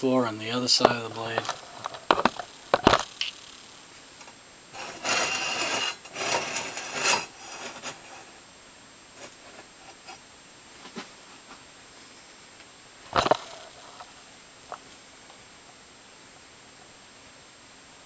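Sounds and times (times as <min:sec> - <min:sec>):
faint ticks: 0:00.8 - 0:04.4.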